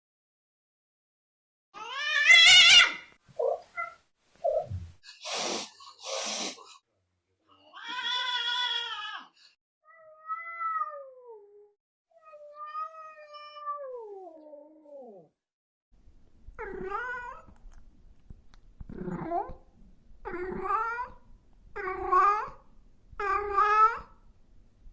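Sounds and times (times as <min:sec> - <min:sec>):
cats yowling: 0:01.8 - 0:04.0
cats hissing: 0:02.2 - 0:06.6
cat growls: 0:18.9 - 0:19.6.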